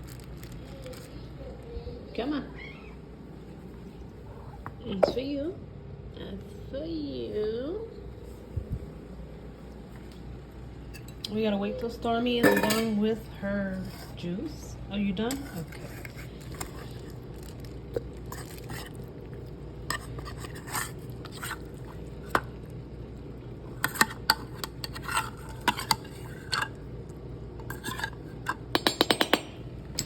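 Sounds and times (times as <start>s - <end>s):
steady low hum: 0.0s - 30.0s
metal utensil clinking on dishes: 12.4s - 13.1s.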